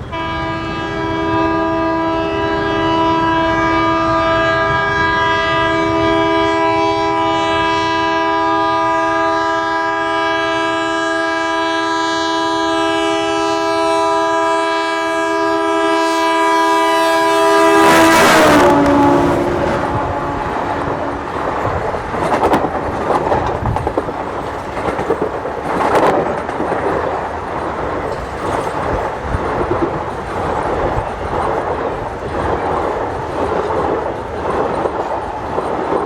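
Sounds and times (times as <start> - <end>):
locomotive horn blast: 0.0 - 21.8
train engine and rolling noise: 0.0 - 36.0.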